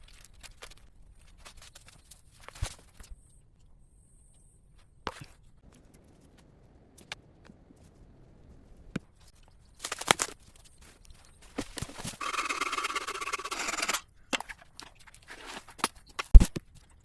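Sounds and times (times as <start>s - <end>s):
quiet low background: 0.0s - 12.6s
scraping or rustling: 9.1s - 16.1s.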